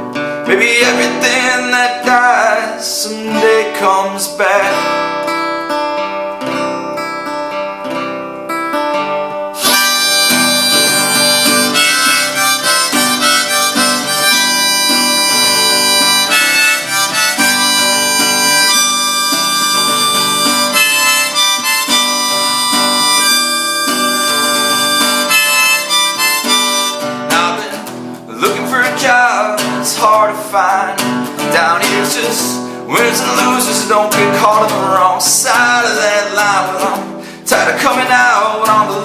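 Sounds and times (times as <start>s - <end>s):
acoustic guitar strumming: 0.0s - 39.0s
harmonica playing: 9.6s - 27.9s.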